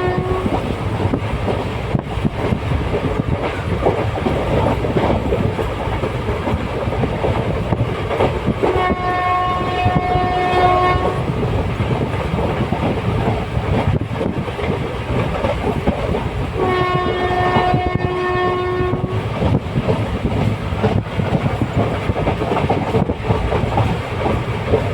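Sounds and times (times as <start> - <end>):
train horn blasts: 0.0 - 0.6, 8.6 - 11.3, 16.6 - 19.2
train wheels rumbling and clattering: 0.0 - 24.9.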